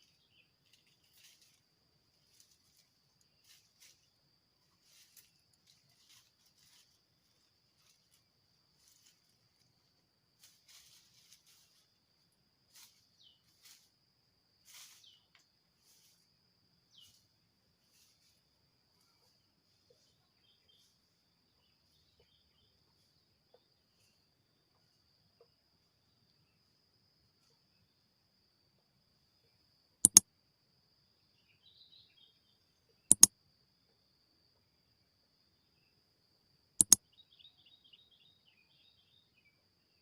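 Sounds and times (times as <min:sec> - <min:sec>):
bird chirps: 0:31.5 - 0:33.3, 0:36.8 - 0:39.3
sharp double clicks: 0:36.8 - 0:37.0.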